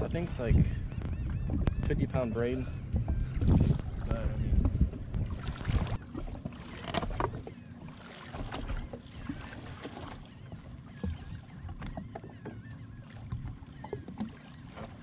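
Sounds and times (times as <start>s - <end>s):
wind on the microphone: 0.0s - 6.0s
water lapping against a hull: 0.0s - 15.0s.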